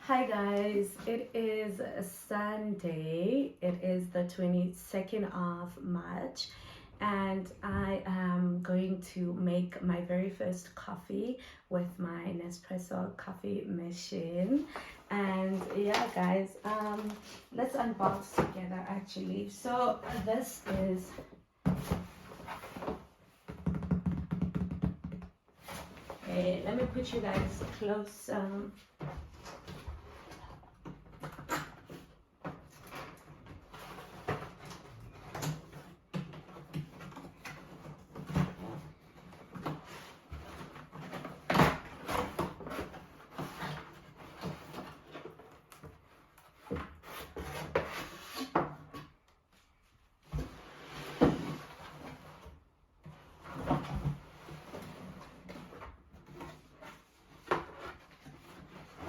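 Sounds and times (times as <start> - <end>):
cardboard packaging rustling: 14.8 - 18.4.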